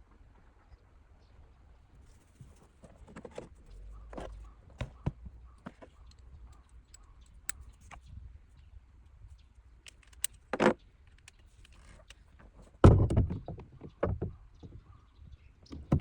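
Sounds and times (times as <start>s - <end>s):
hand tools clicking and tapping: 9.9s - 10.4s, 11.1s - 12.2s.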